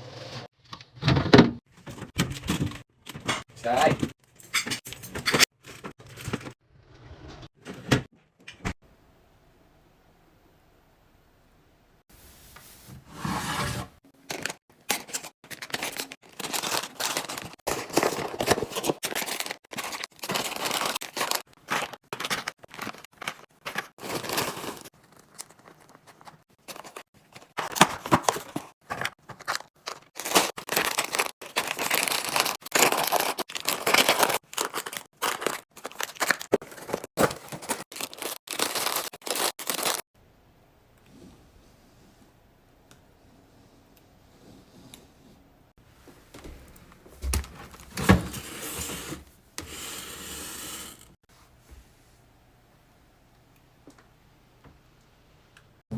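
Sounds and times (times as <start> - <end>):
packaging cut and torn open: 29.0 - 40.0.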